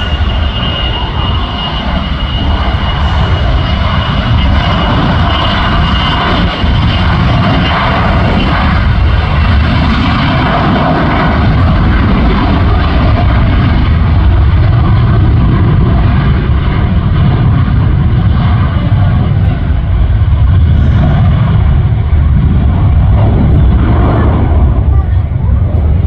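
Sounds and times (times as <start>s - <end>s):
aircraft engine passing: 0.0s - 26.0s.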